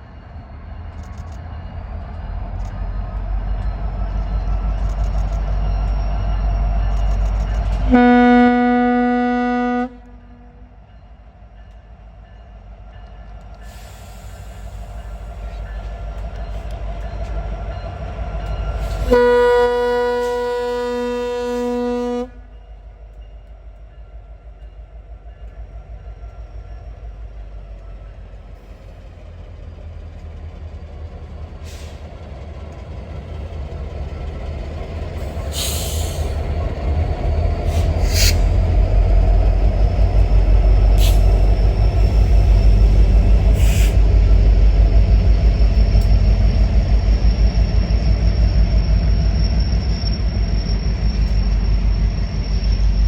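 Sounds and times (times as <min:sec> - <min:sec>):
low rumble of moving train: 0:00.0 - 0:53.0
locomotive air horn blasts: 0:07.8 - 0:10.7, 0:18.9 - 0:22.5.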